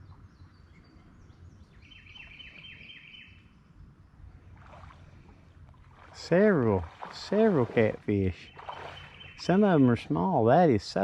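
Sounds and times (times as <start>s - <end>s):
bird chirping: 0.0s - 3.7s, 8.3s - 9.9s
low background rumble: 3.3s - 11.0s.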